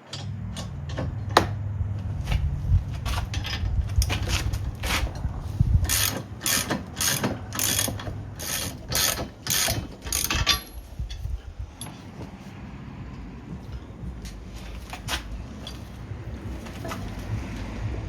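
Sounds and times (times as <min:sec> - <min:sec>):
ratchet wrench clicking: 0:05.8 - 0:10.8.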